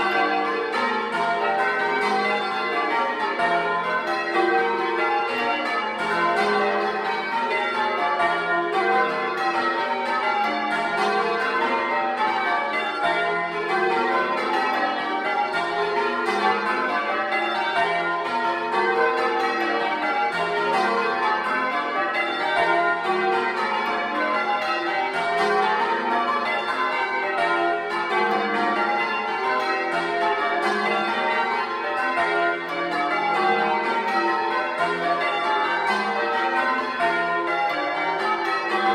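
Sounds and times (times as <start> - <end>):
church bells change ringing: 0.0 - 38.9.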